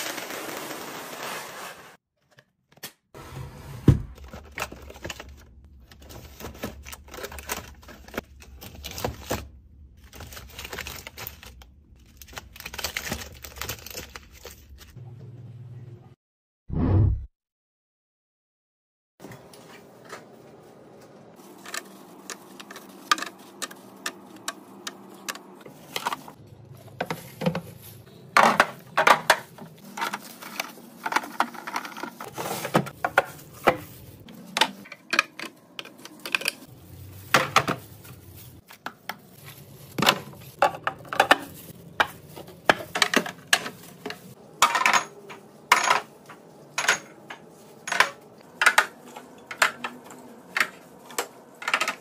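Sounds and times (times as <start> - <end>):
bottles and containers clinking: 39.9 - 52.0.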